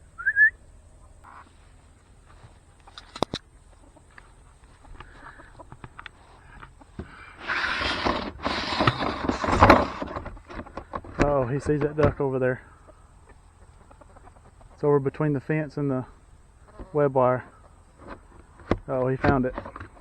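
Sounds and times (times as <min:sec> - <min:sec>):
chicken squawking: 0:04.8 - 0:05.7, 0:12.7 - 0:14.8.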